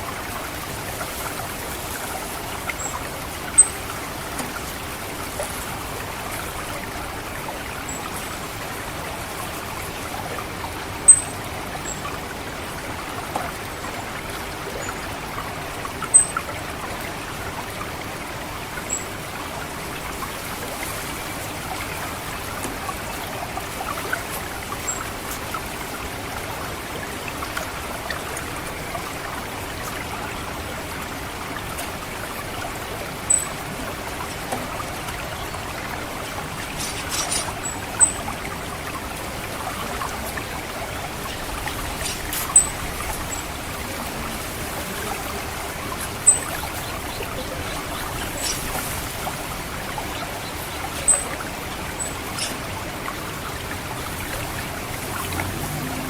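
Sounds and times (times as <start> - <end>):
water trickling: 0.0 - 56.0
thin high bird calls: 2.6 - 4.0, 11.0 - 12.1, 16.0 - 16.4, 33.3 - 33.5, 36.6 - 38.4, 41.3 - 43.5, 46.0 - 53.3.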